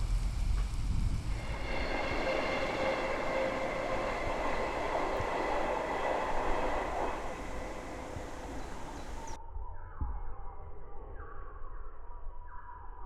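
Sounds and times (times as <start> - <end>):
train rumbling past: 0.0 - 9.4.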